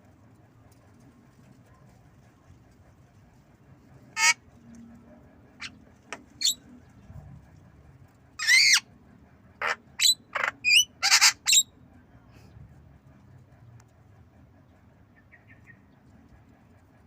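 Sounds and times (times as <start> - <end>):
bird squawking calls: 4.2 - 4.4, 5.6 - 6.6, 8.4 - 8.9, 9.6 - 11.7.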